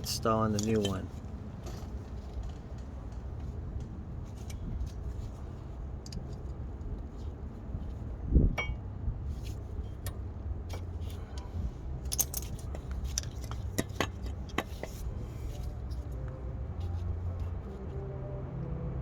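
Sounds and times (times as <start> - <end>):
steady low rumble: 0.0 - 19.0
metal tools clinking: 0.3 - 2.6, 12.0 - 15.6.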